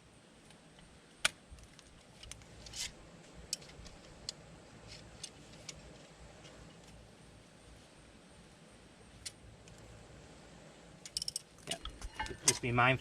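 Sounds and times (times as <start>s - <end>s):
metal clicks and taps: 11.0s - 12.6s
metal rattle: 11.1s - 12.7s.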